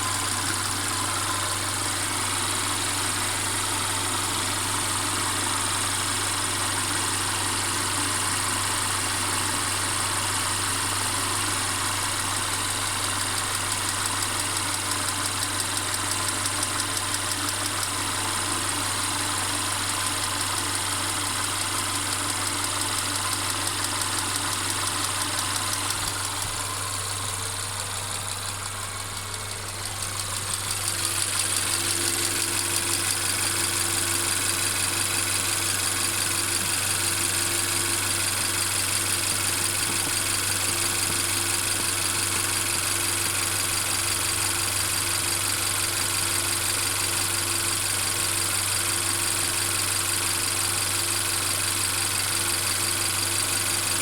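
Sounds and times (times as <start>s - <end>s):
car engine running: 0.0s - 54.0s
constant rattling: 21.3s - 38.5s.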